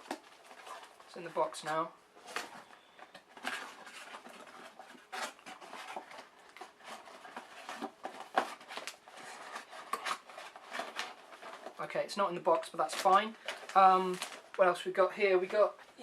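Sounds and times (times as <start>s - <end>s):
rustles knocks and clicks of handling: 0.0s - 11.8s.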